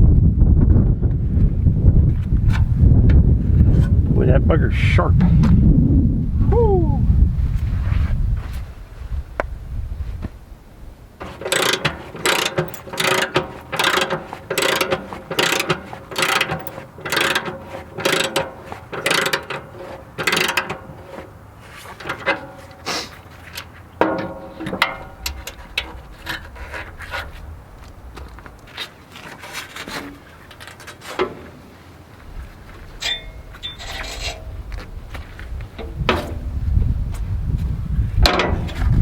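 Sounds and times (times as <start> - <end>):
ratchet clicking: 11.3 - 19.6.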